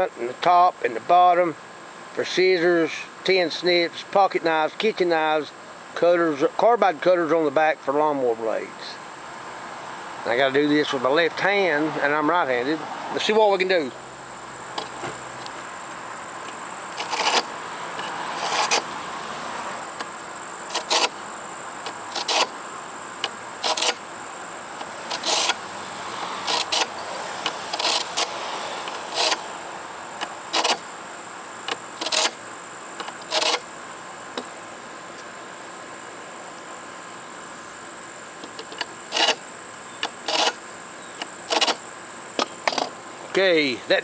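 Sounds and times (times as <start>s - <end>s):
sharpener scraping metal blade: 17.0s - 18.9s, 20.7s - 21.2s, 22.1s - 22.5s, 23.6s - 24.0s, 25.1s - 25.6s, 26.4s - 26.9s, 27.7s - 28.3s, 28.9s - 29.4s, 30.5s - 30.8s, 32.0s - 32.4s, 33.2s - 33.6s, 39.1s - 39.4s, 40.2s - 40.6s.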